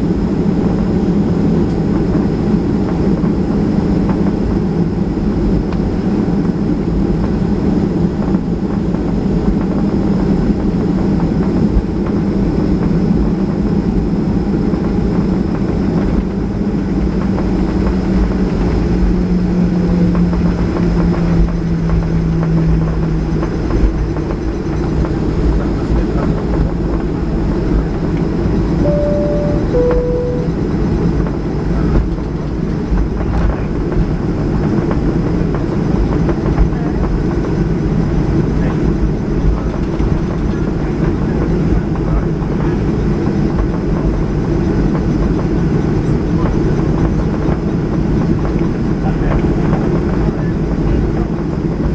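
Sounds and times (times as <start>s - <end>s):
two-tone chime: 28.8s - 30.6s.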